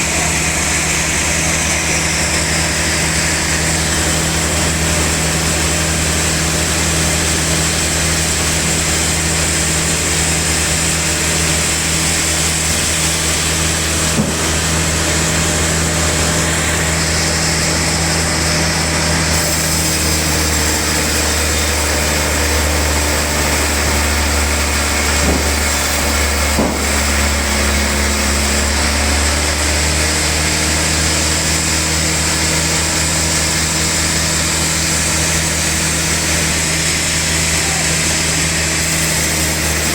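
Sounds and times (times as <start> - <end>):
band saw running: 0.0 - 39.9
brief knock: 14.1 - 14.5, 26.6 - 27.0.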